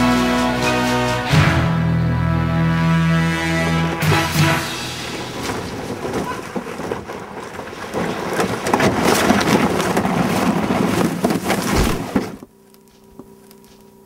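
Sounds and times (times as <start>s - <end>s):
canoe hull scraping and bumping: 4.4s - 12.5s.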